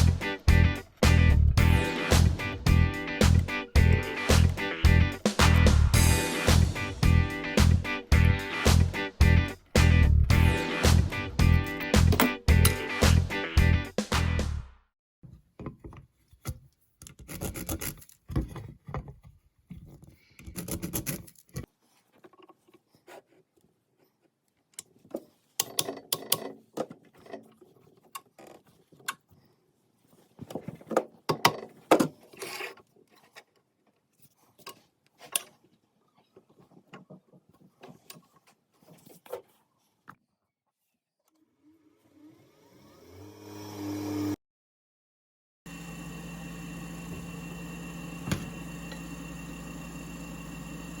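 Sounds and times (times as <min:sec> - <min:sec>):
hands rubbing and scraping parts: 0:15.7 - 0:41.0.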